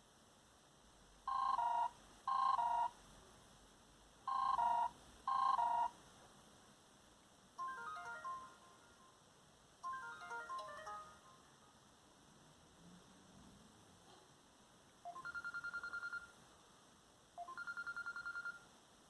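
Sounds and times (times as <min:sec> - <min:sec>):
electronic two-note phone ring: 0:01.3 - 0:02.9, 0:04.3 - 0:05.9, 0:17.4 - 0:18.6.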